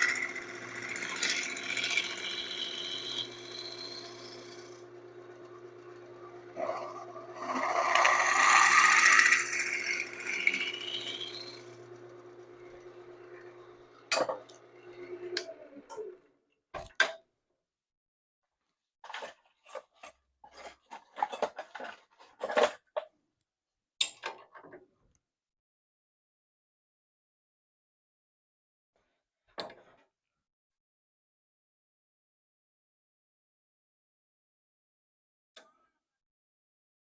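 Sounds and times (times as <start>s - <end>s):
tool scraping spinning wood: 0.0s - 13.7s
wood lathe motor humming: 0.0s - 15.9s.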